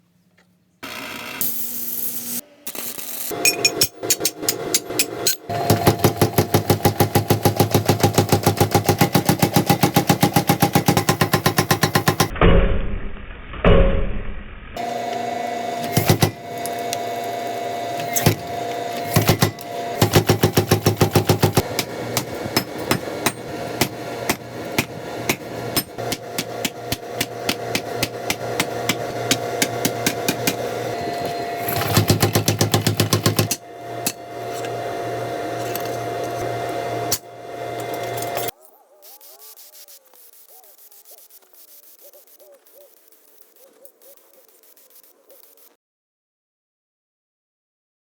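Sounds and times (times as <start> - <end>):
steady hum: 14.8 - 38.5
hammer blows on hot steel: 18.0 - 38.5.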